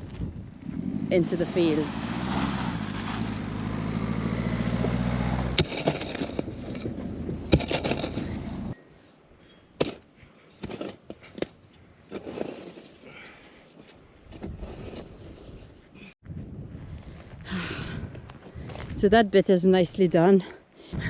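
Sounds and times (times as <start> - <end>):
engine running: 0.6 - 8.8
light knocks and scrapes: 5.6 - 8.6.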